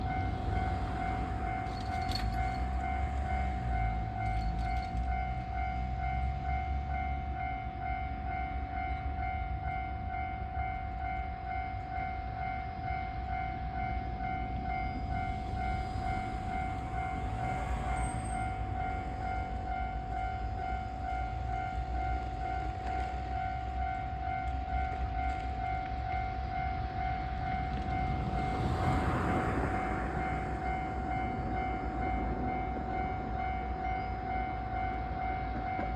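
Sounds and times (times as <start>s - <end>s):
high-pitched brake whine: 0.0s - 35.9s
low rumble: 14.2s - 20.8s, 26.9s - 34.0s.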